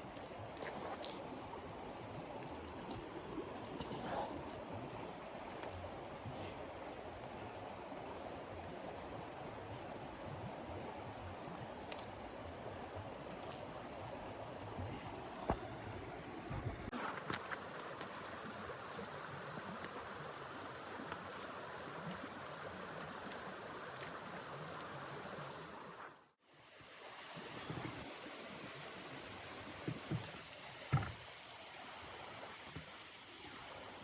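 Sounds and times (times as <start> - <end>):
soft knocks: 30.9 - 31.2.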